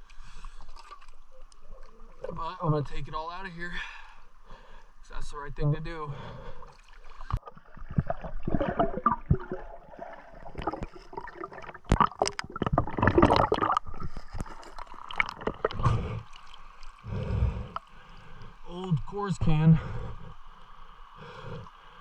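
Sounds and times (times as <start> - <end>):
river water gurgling and splashing: 5.9 - 22.0.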